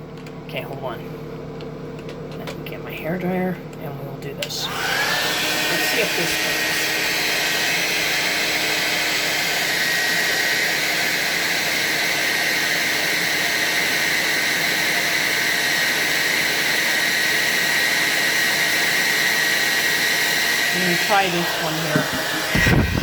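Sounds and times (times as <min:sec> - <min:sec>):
hair dryer running: 0:04.4 - 0:23.0.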